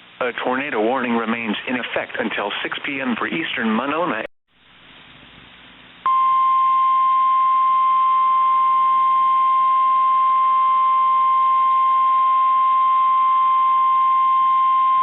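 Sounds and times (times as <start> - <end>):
faint radio hiss: 0.0 - 6.1
loud steady warning beep: 6.1 - 15.0.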